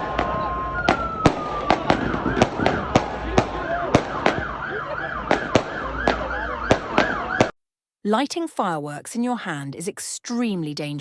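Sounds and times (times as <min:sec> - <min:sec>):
fireworks banging: 0:00.0 - 0:04.6, 0:05.2 - 0:07.6
police siren yelping: 0:00.0 - 0:07.5.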